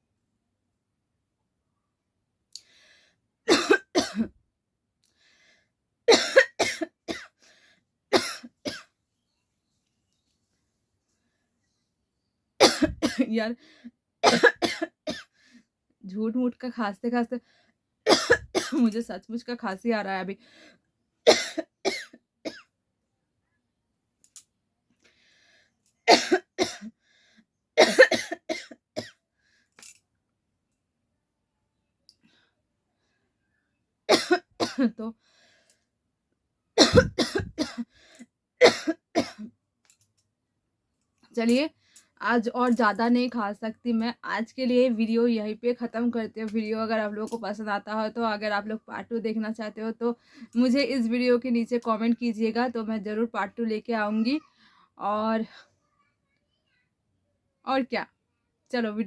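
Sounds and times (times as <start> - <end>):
woman coughing: 3.5 - 4.4, 6.1 - 7.4, 8.1 - 8.9, 12.6 - 13.3, 14.2 - 15.3, 18.1 - 19.0, 21.3 - 22.7, 26.1 - 26.9, 27.8 - 29.2, 34.1 - 35.0, 36.8 - 37.9, 38.6 - 39.5
woman talking: 12.9 - 13.6, 16.0 - 17.4, 18.6 - 20.4, 41.4 - 54.4, 55.0 - 55.6, 57.7 - 58.1, 58.8 - 59.0.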